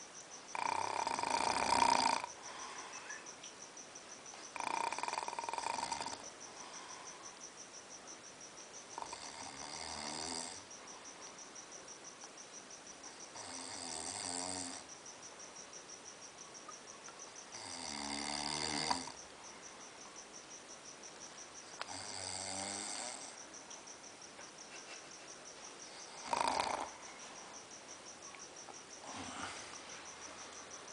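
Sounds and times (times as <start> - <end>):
heavy snoring: 0.5 - 2.9, 4.5 - 6.3, 9.0 - 10.6, 13.3 - 14.9, 17.5 - 19.2, 21.8 - 23.4, 25.9 - 27.1, 29.0 - 30.1.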